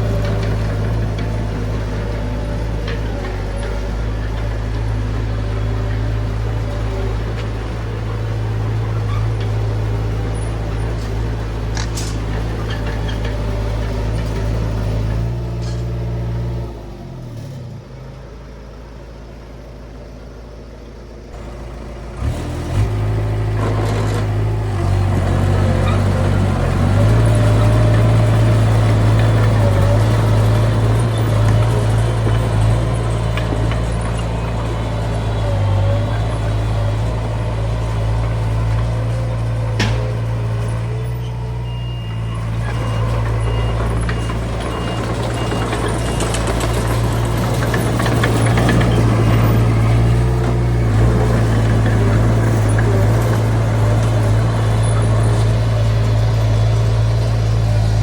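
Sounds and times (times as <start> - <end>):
bulldozer diesel engine running: 0.0 - 58.0
sharp engine knocks: 38.3 - 40.6.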